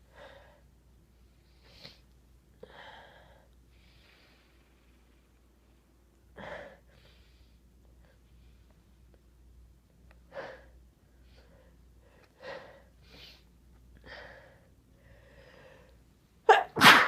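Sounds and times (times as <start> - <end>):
person sneezing loudly: 16.5 - 17.0.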